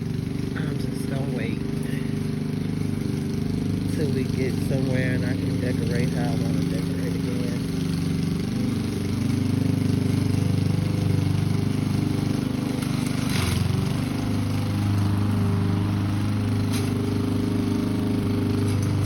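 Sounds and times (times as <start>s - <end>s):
lawn mower engine running: 0.0s - 19.0s.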